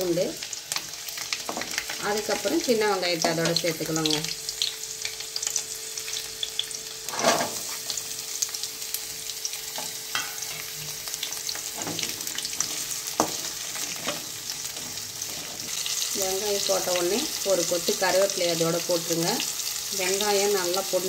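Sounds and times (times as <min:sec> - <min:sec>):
shallots frying in hot oil: 0:00.0 - 0:21.0
spatula stirring: 0:10.1 - 0:16.0.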